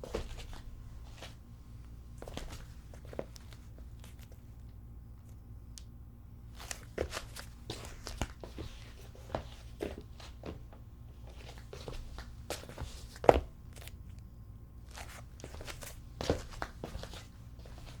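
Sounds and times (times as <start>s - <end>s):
footsteps in sandals: 0.0s - 1.4s, 2.2s - 4.4s, 6.6s - 14.0s, 14.9s - 18.0s.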